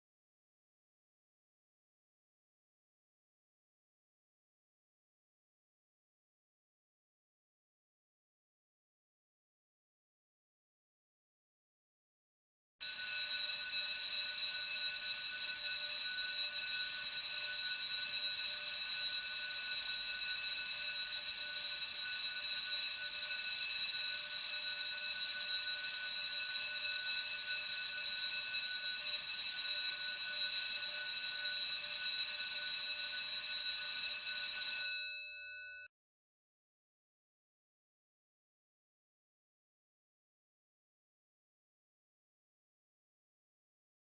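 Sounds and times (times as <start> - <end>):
school bell ringing: 12.8 - 16.6, 33.8 - 35.3.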